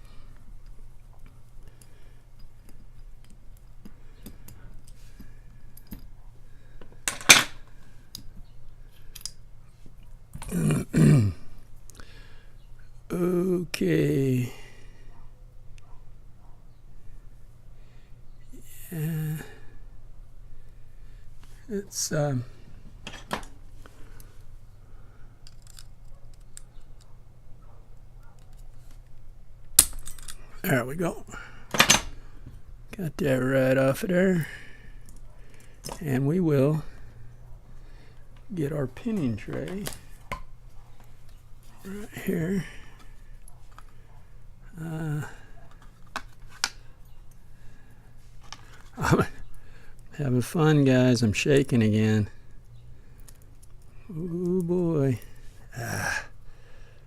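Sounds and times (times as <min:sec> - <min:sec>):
steady low hum: 0:00.0 - 0:57.0
padlock metallic clicks and scraping: 0:06.8 - 0:09.5, 0:25.4 - 0:27.1, 0:28.4 - 0:30.4, 0:52.5 - 0:53.9
person making short vocal sounds: 0:10.4 - 0:11.5, 0:54.1 - 0:56.4
padlock clicking metallically: 0:25.4 - 0:27.1, 0:29.7 - 0:30.4
sharp padlock clack: 0:29.8 - 0:30.4.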